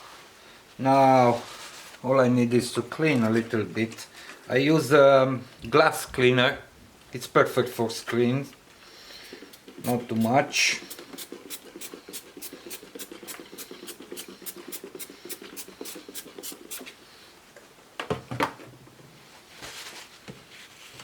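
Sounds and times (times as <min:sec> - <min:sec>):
cloth wiping a screen: 0:09.2 - 0:17.1.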